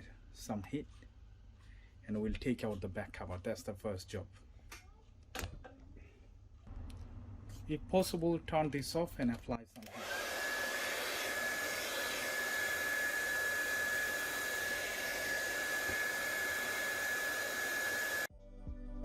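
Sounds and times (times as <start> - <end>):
hair dryer blowing: 9.8 - 18.3.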